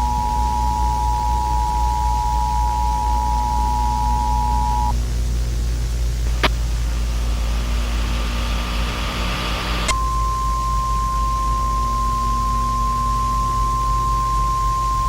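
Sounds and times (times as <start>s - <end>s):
low rumble and hiss: 0.0s - 15.0s
static hiss: 0.0s - 15.0s
clicks: 9.8s - 10.0s.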